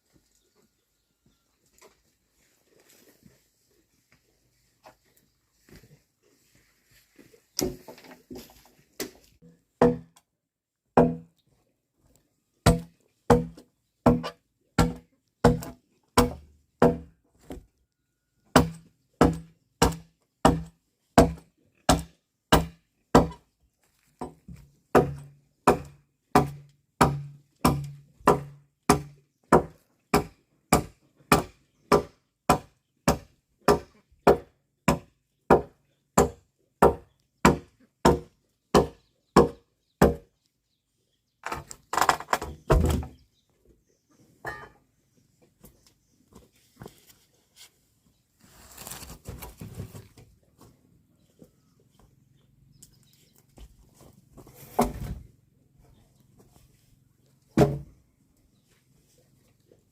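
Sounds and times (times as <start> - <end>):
blade chopping into wood: 12.7 - 17.1, 18.6 - 23.4, 25.0 - 40.3.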